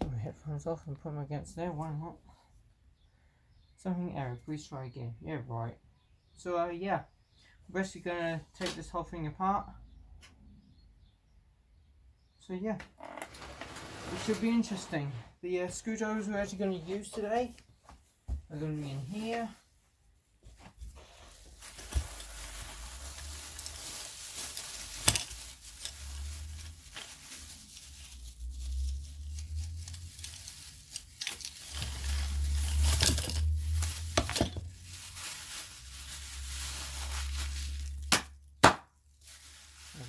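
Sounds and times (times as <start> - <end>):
rustling and crinkling: 13.2 - 40.0.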